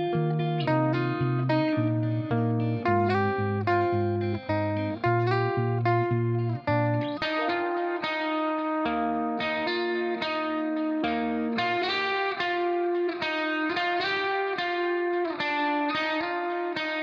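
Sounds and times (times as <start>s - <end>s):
plucked guitar-like melody: 0.0s - 17.0s.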